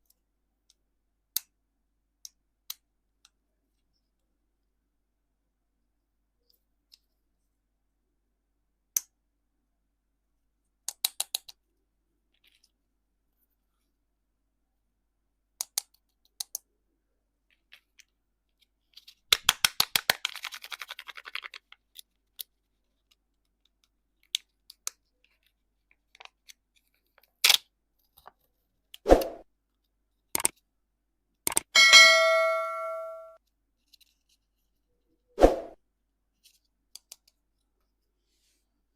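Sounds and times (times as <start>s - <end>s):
candy packaging clicks and taps: 19.0s - 28.5s
ringing ding: 31.8s - 33.4s.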